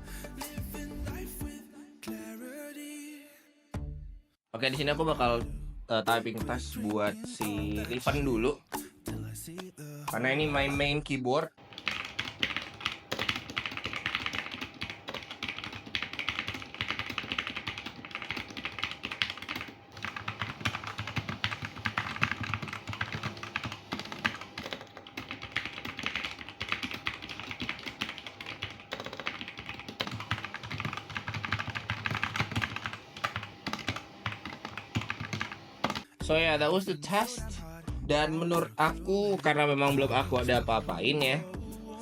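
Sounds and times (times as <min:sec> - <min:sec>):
mechanical keyboard typing: 0:11.6 - 0:36.1.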